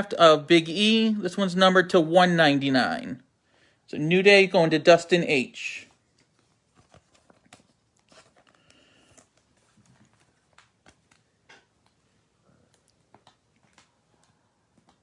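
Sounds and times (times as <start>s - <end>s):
cards and packaging rustling: 5.8s - 15.0s.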